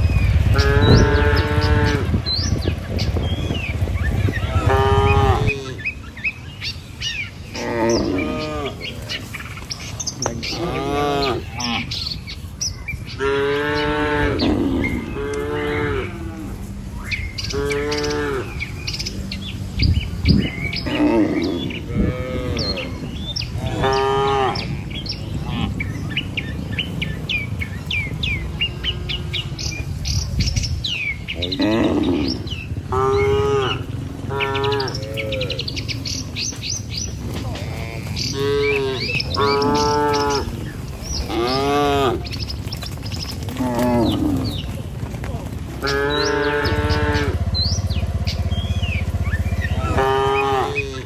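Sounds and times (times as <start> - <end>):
small birds chirping: 0.0 - 51.0
cattle mooing: 0.4 - 2.3, 4.3 - 5.8, 7.5 - 9.2, 10.3 - 12.0, 13.2 - 16.8, 17.4 - 18.7, 20.4 - 25.9, 28.6 - 29.8, 31.4 - 35.9, 37.5 - 42.4, 43.6 - 44.7, 45.8 - 51.0.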